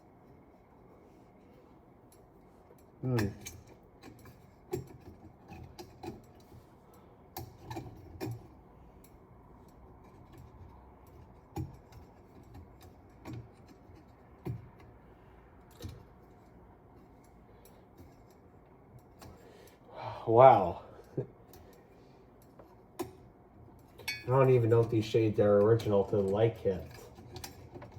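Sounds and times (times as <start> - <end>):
glass shades clicking and tapping: 7.3 - 15.0, 22.4 - 27.9.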